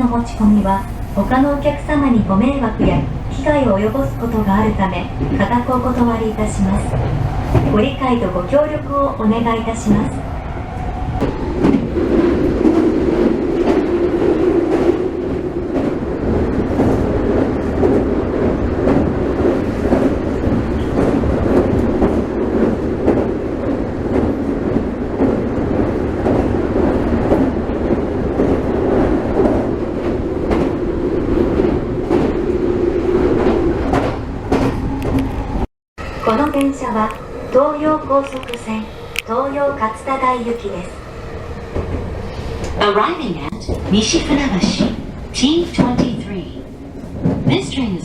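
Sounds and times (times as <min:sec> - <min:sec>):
rail joint clicks: 0:00.0 - 0:15.0, 0:33.0 - 0:35.6, 0:36.2 - 0:47.8
train wheels rumbling on rail: 0:00.0 - 0:48.0.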